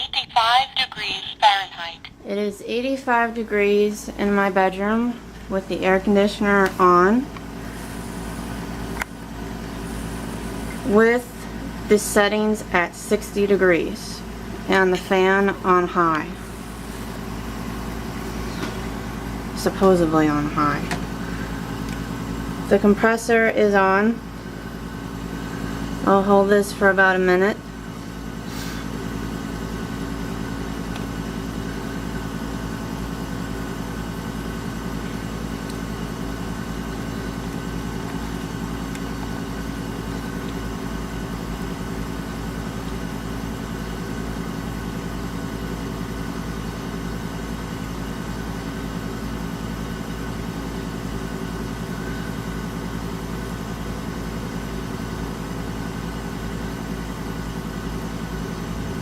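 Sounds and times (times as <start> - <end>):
fan air rushing: 0.0 - 45.0
air conditioner humming: 0.0 - 59.0.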